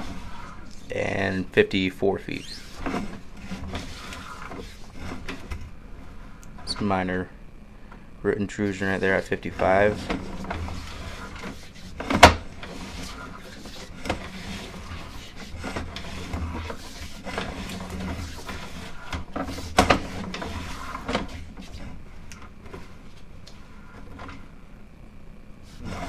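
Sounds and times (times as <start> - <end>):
cable knocks and sliding rattles: 0.0 - 6.8, 8.9 - 24.5, 25.7 - 26.0
low steady hum: 0.0 - 26.0.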